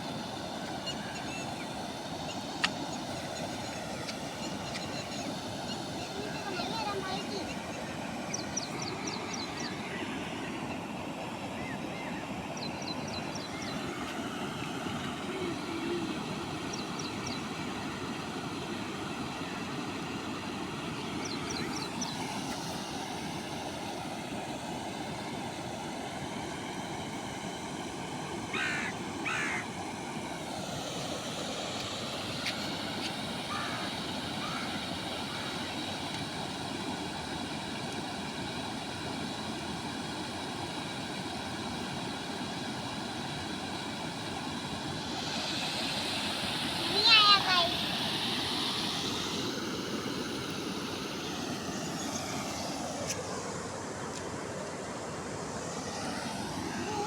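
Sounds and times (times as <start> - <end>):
engine-like drone: 41.7 - 57.0.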